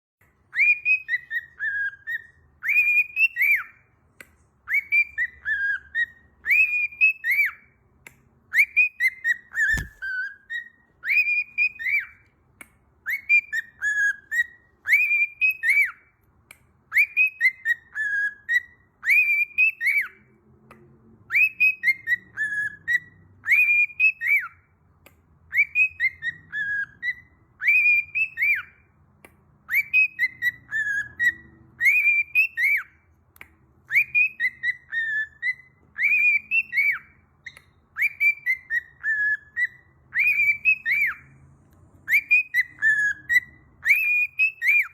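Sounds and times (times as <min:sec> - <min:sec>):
parrot whistling: 0:09.7 - 0:10.0.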